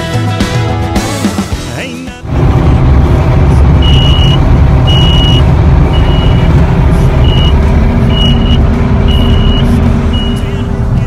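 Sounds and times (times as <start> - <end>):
engine rumble: 1.7 - 11.0
reversing alarm beeping: 3.7 - 6.6, 7.2 - 10.6.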